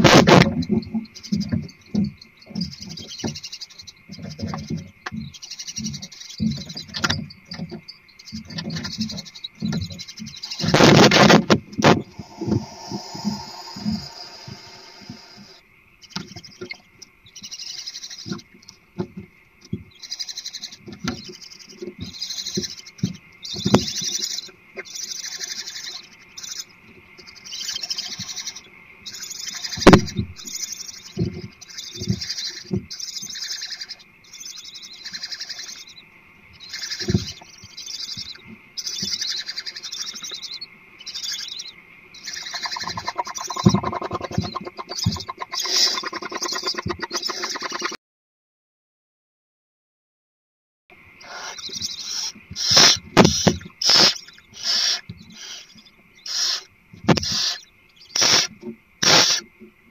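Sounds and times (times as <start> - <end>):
owls screeching: 10.4 - 15.6, 42.3 - 48.0, 51.2 - 53.0, 53.8 - 57.6
thumps and knocks: 42.8 - 45.6.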